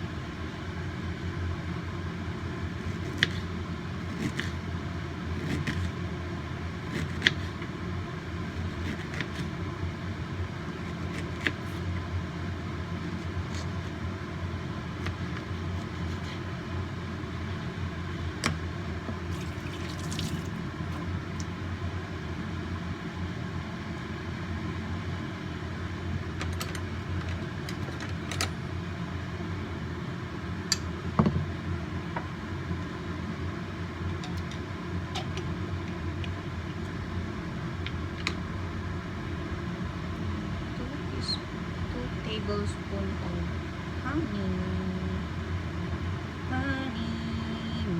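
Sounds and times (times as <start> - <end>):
pot of water rumbling: 19.1 - 21.5.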